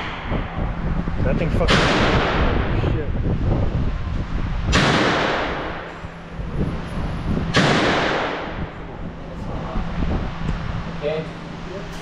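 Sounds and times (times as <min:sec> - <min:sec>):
gunshots with long echo: 0:01.6 - 0:02.7, 0:04.7 - 0:06.0, 0:07.5 - 0:08.7.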